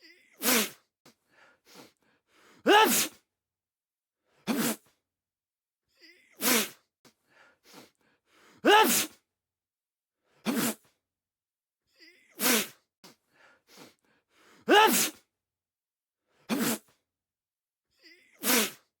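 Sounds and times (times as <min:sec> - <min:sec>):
person sneezing: 0:00.0 - 0:00.8, 0:02.6 - 0:03.2, 0:04.4 - 0:04.9, 0:06.1 - 0:06.8, 0:08.6 - 0:09.2, 0:10.4 - 0:10.9, 0:12.1 - 0:12.8, 0:14.7 - 0:15.2, 0:16.5 - 0:17.0, 0:18.1 - 0:18.9
breath in: 0:00.4 - 0:03.2, 0:06.2 - 0:09.2, 0:12.3 - 0:15.2.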